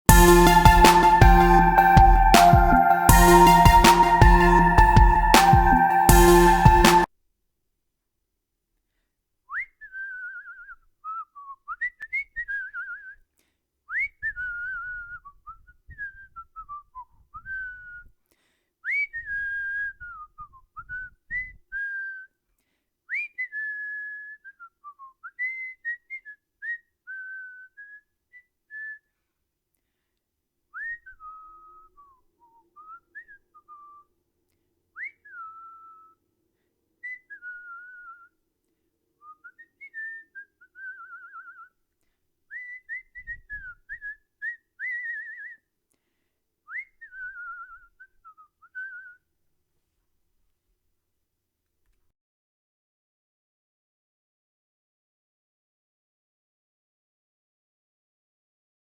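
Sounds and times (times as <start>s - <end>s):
person whistling a tune: 0.1s - 7.1s.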